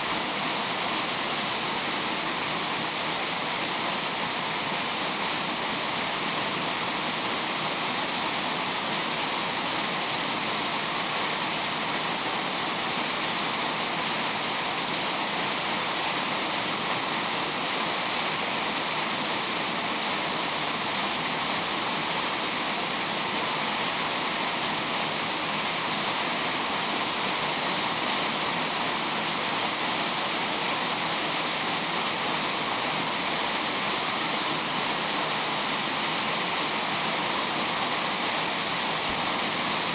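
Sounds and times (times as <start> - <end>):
water rushing: 0.0 - 39.9.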